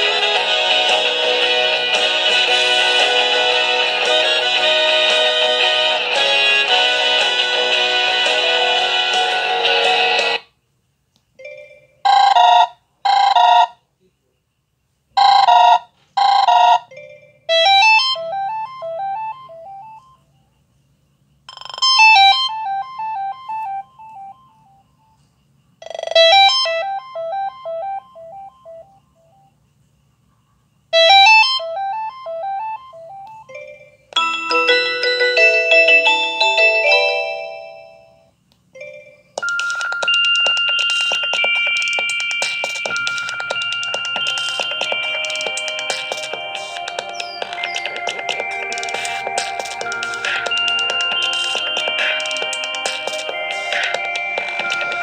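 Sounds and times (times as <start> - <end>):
busy ringtone tune: 0.0 - 10.4, 11.4 - 13.8, 15.2 - 20.3, 21.5 - 25.2, 25.8 - 29.5, 31.0 - 55.0
chiming ringtone notes: 11.4 - 13.6, 15.2 - 20.3, 21.5 - 25.2, 25.8 - 29.5, 31.0 - 55.0.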